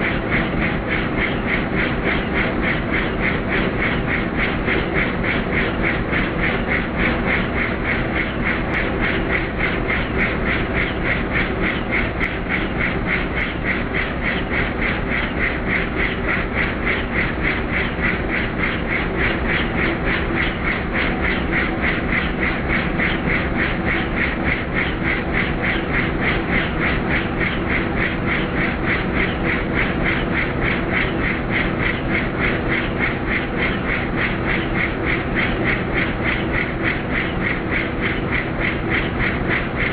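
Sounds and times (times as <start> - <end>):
helicopter rotor noise: 0.0 - 39.9.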